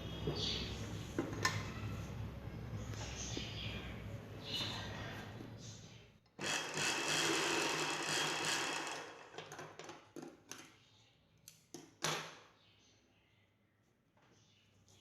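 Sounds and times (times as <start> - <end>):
sewing machine stitching: 6.4 - 9.6.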